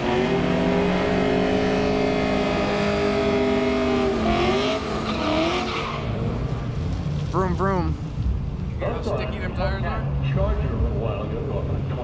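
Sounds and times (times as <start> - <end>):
drag racing car engine revving: 0.0 - 6.9.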